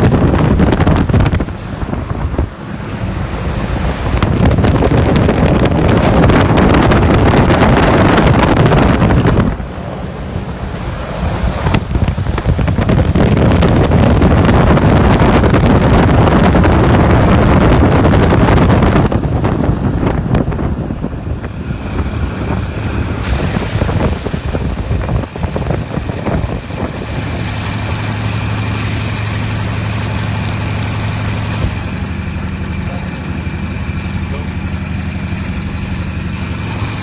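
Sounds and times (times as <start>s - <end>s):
wind buffeting microphone: 0.0s - 34.0s.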